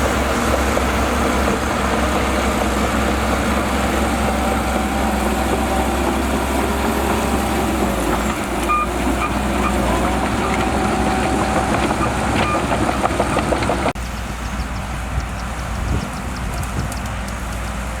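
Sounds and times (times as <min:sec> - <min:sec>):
bulldozer diesel engine running: 0:00.0 - 0:18.0
short high beeps: 0:08.7 - 0:09.8.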